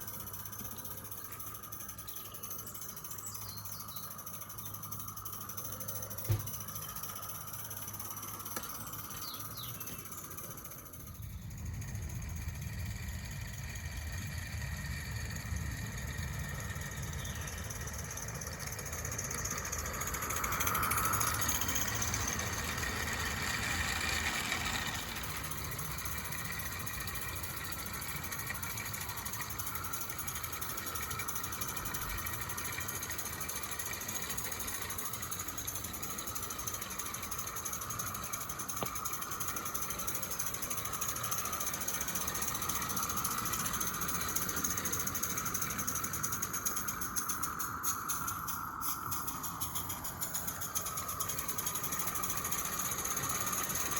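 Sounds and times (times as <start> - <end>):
model steam locomotive chuffing: 0.0 - 53.9
steam hiss: 28.7 - 53.9.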